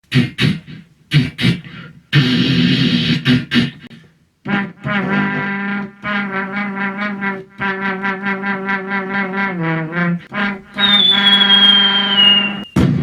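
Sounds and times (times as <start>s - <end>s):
mouth trumpet fanfare: 4.5s - 13.0s.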